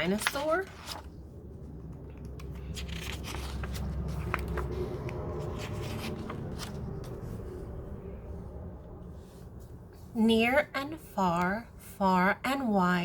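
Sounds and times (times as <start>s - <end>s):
book pages turning: 0.0s - 7.9s.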